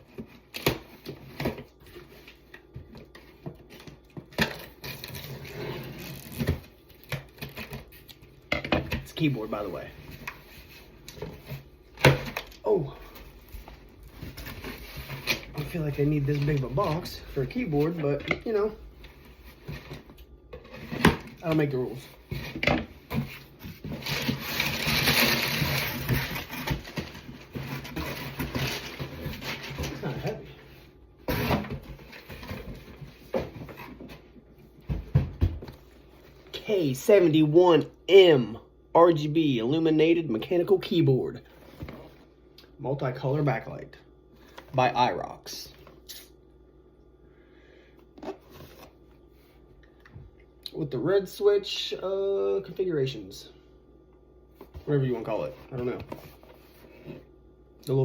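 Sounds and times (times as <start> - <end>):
cardboard scraping and rustling: 13.0 - 34.4, 54.6 - 57.3.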